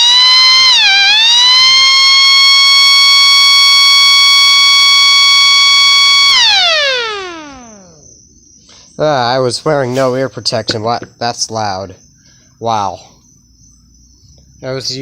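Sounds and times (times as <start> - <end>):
siren winding down: 0.0 - 8.1.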